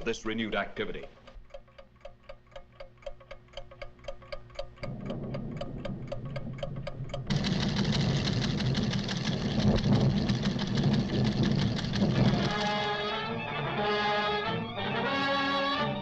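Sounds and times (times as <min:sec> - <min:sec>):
cartoon instruments ticking rapidly: 0:00.1 - 0:13.0
loud dense rumble: 0:04.8 - 0:12.9.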